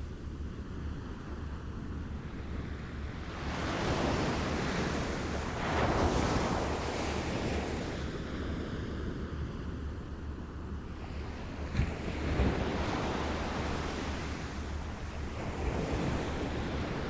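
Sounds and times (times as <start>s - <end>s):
waves lapping on shore: 2.8s - 8.9s.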